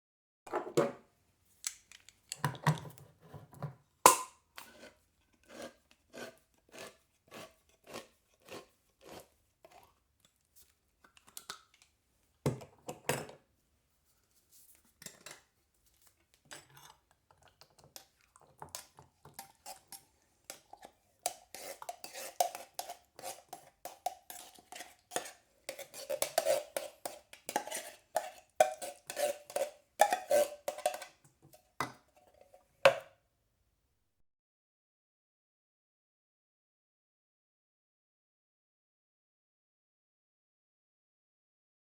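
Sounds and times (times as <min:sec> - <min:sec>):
scraping into metal saucepan: 0:02.9 - 0:07.0, 0:17.8 - 0:32.7.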